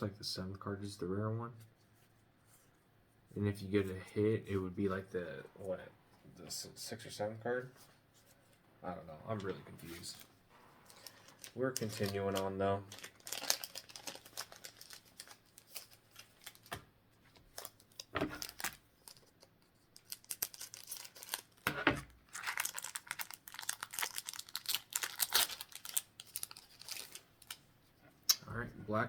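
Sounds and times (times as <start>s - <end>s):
cards rustling and flicking: 9.9s - 27.6s
foil wrapper crinkling: 10.0s - 27.6s.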